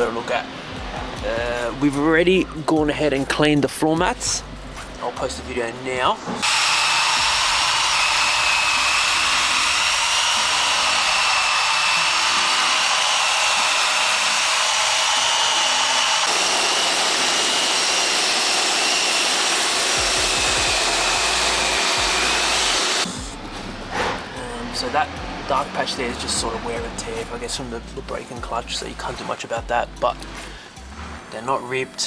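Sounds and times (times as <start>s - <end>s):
electric blower motor whining: 6.3s - 28.0s.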